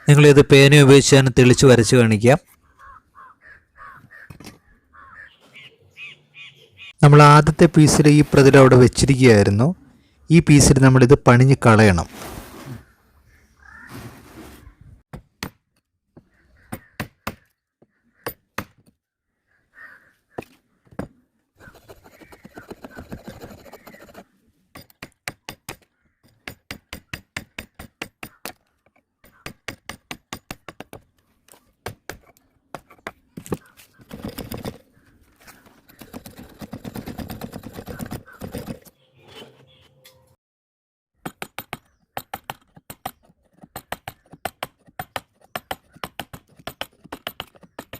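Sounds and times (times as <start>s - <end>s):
steady rasping of wood: 21.6s - 28.5s, 31.8s - 38.9s, 41.8s - 47.9s.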